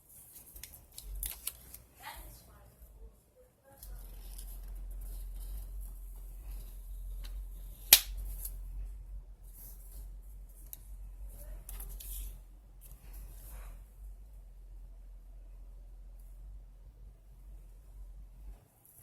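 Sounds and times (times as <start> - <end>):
paper rustling: 0.0 - 2.4, 3.8 - 8.6
low electrical hum: 0.0 - 19.0.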